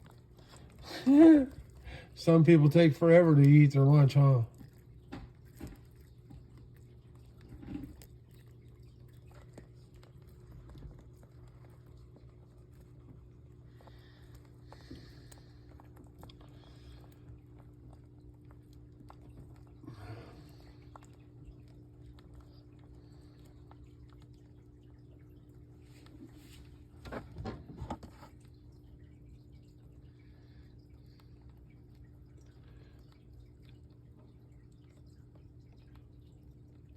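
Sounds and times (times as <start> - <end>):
steady low hum: 0.0 - 36.9
lizard chewing beetle crunches: 1.5 - 25.2.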